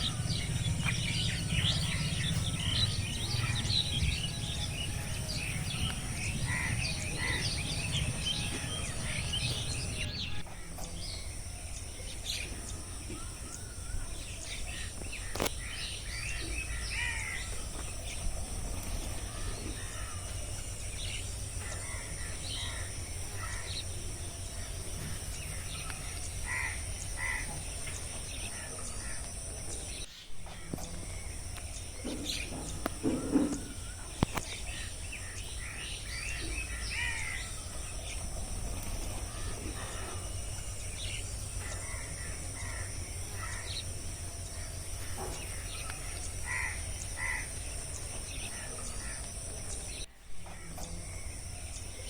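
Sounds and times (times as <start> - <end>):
low rumble: 0.0 - 11.5
birds chirping and calling: 0.0 - 52.0
high-pitched insect drone: 0.0 - 52.0.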